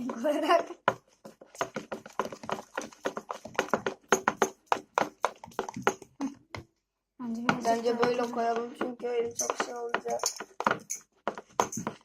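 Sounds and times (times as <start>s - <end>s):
slime squelching in a bowl: 0.0s - 6.5s.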